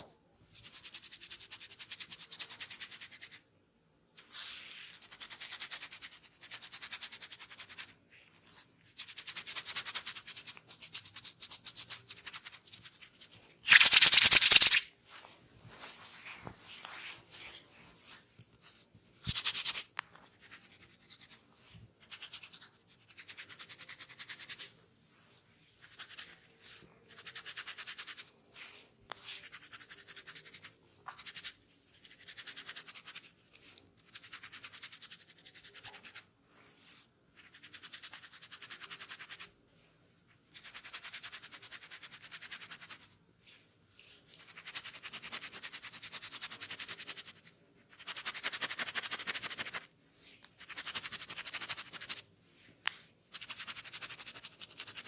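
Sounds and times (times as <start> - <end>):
scratching scalp through hair: 4.2 - 39.9.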